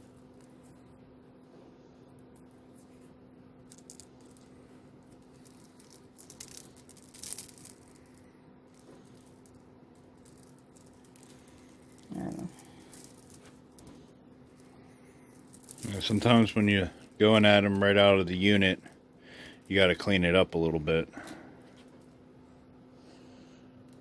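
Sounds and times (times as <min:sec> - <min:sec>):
steady low hum: 0:00.0 - 0:24.0
jewelry clinking and rattling: 0:03.7 - 0:17.4.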